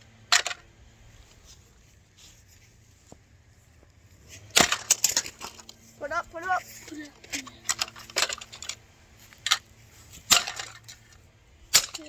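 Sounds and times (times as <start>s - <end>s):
toy being smashed: 4.6s - 5.6s, 10.3s - 10.8s.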